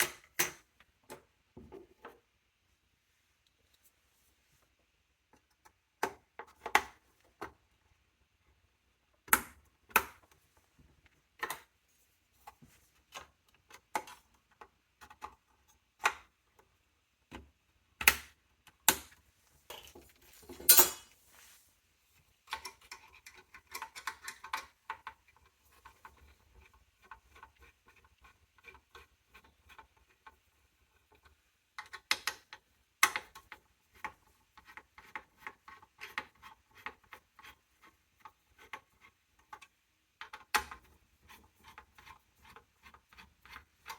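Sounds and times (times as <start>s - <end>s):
metal and plastic clicks and knocks: 22.5s - 26.2s.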